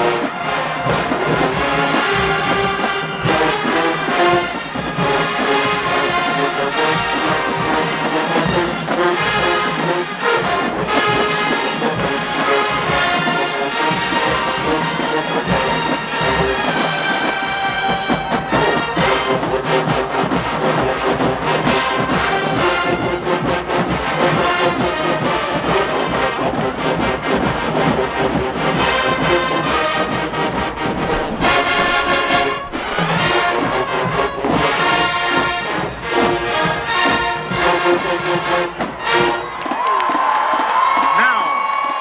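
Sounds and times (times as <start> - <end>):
brass marching band playing: 0.0 - 42.0
trombones and trumpets: 0.0 - 42.0.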